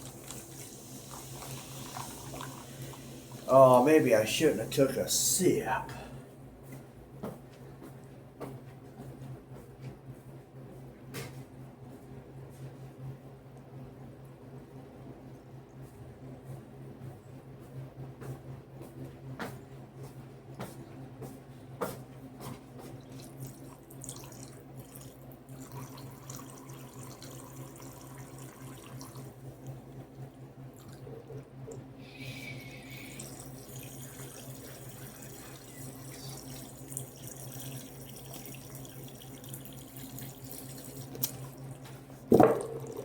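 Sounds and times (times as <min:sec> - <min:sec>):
steady low hum: 0:00.0 - 0:43.0
water trickling and dripping: 0:33.2 - 0:41.3.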